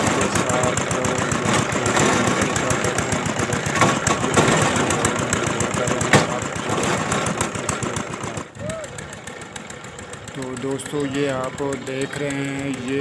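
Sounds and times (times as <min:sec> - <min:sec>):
sharp knocks: 0:00.0 - 0:05.2, 0:05.8 - 0:07.9
diesel engine running: 0:00.0 - 0:13.0.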